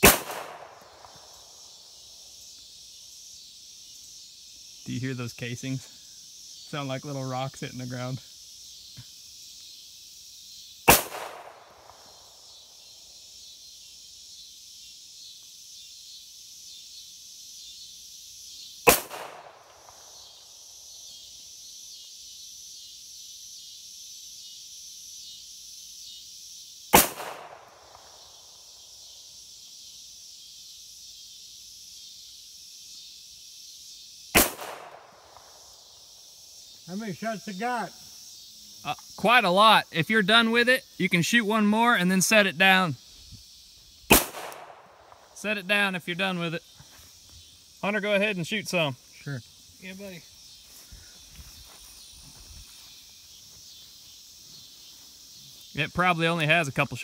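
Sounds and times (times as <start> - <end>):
pistol shots with echo: 0.0 - 1.2, 10.9 - 11.9, 18.9 - 19.6, 27.0 - 27.9, 34.4 - 35.4, 44.1 - 45.2
insects chirping: 0.0 - 57.0.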